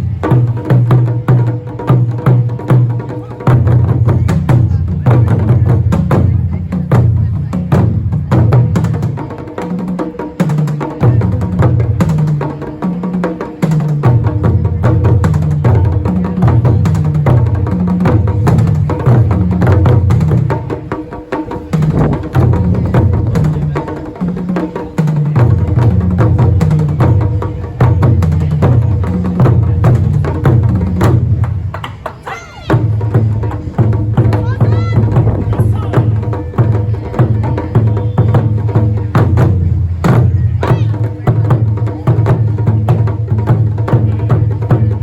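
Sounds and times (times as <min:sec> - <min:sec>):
taiko drums playing: 0:00.0 - 0:45.0.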